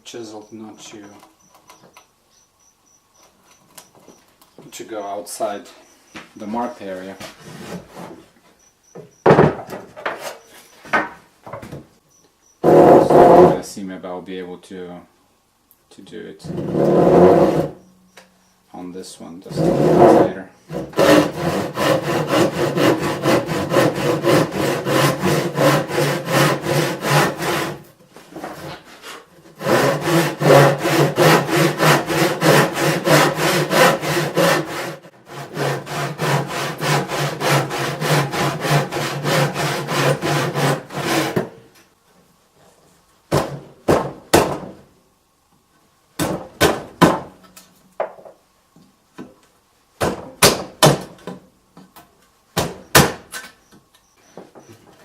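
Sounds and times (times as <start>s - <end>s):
sharp knocks: 9.0s - 10.2s, 43.3s - 44.8s
handsaw cutting wood: 12.6s - 13.6s, 16.4s - 17.8s, 19.5s - 41.6s.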